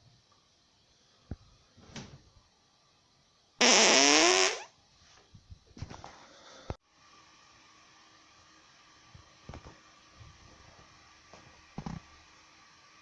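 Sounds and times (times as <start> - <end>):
loud buzzy fart: 3.6 - 4.7.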